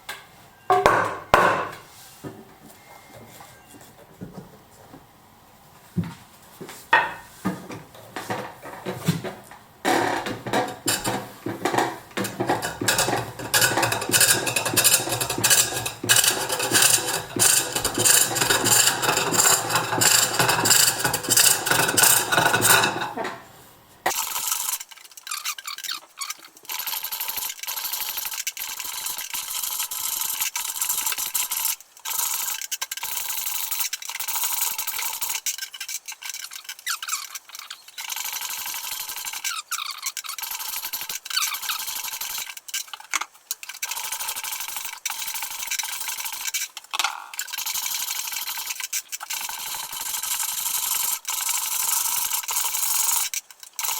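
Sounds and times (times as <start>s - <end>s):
lathe tool scraping wood: 9.8s - 23.4s.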